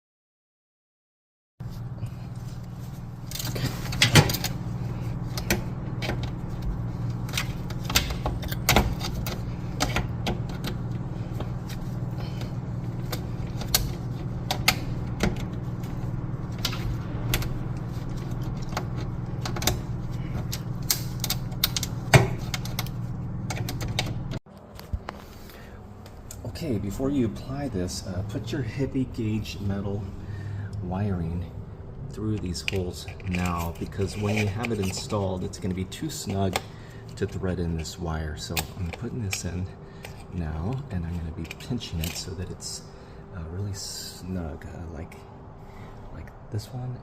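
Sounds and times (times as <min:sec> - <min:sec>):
steady low hum: 0:01.6 - 0:47.0
metal parts clicking and rattling: 0:02.4 - 0:24.4, 0:32.4 - 0:35.5, 0:38.5 - 0:42.4.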